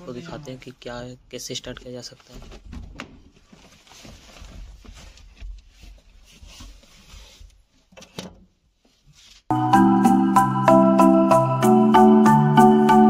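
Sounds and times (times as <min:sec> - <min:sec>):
rustling and handling noises: 0:02.0 - 0:09.5.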